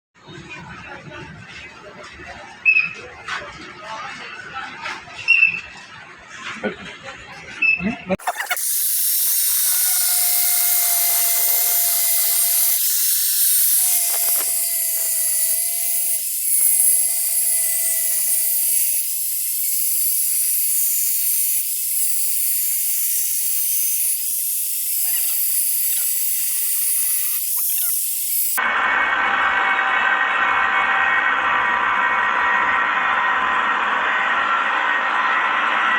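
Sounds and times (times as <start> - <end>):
electric grinder grinding steel: 8.2 - 35.9
faint motor whine: 8.2 - 35.9.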